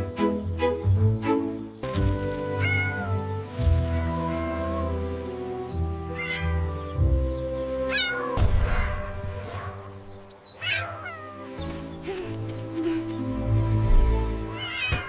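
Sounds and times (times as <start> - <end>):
background music: 0.0 - 15.0
cat meowing: 2.6 - 3.2, 6.1 - 6.7, 7.9 - 9.2, 10.6 - 11.5, 14.5 - 15.0.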